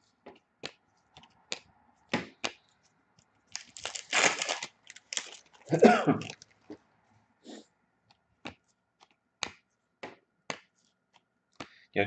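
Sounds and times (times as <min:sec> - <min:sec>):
foil wrapper tearing and crinkling: 0:03.5 - 0:06.5.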